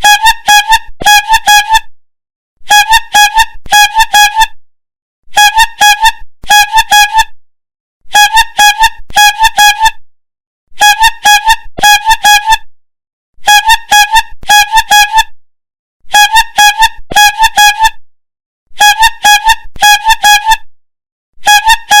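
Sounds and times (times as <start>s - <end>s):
bulb horn tooting: 0.0s - 1.9s, 2.6s - 4.6s, 5.3s - 7.4s, 8.1s - 10.0s, 10.8s - 12.7s, 13.4s - 15.4s, 16.1s - 18.0s, 18.7s - 20.7s, 21.4s - 22.0s.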